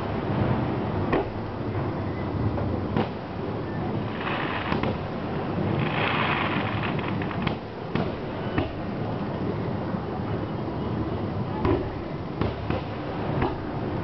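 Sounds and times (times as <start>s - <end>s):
fireworks bangs: 3.9s - 9.0s
fireworks crackling: 3.9s - 9.0s.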